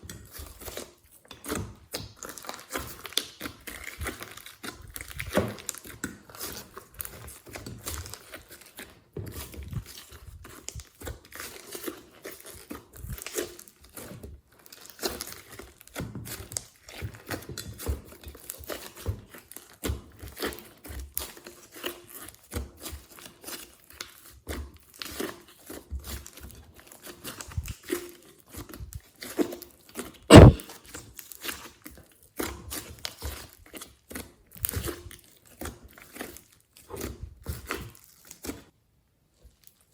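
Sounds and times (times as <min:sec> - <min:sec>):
loud slime pop: 0:30.3 - 0:30.6.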